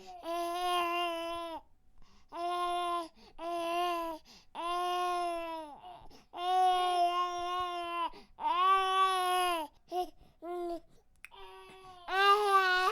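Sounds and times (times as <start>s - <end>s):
infant crying: 2.4s - 10.6s, 11.4s - 12.9s.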